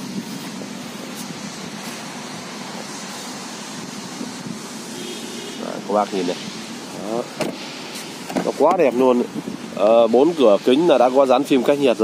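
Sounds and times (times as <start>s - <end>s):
air conditioning fan whooshing: 0.0s - 12.0s.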